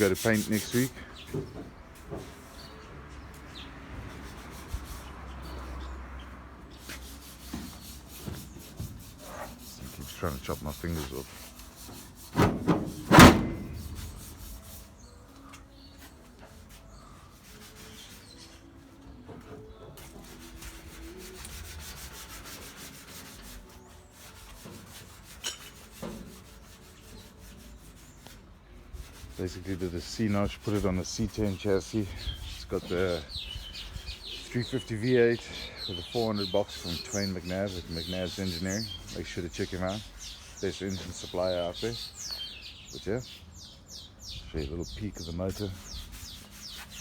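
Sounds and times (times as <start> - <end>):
hand sanding metal panels: 0.0 - 1.0, 6.7 - 15.4, 16.0 - 18.7, 20.0 - 42.2, 45.1 - 47.0.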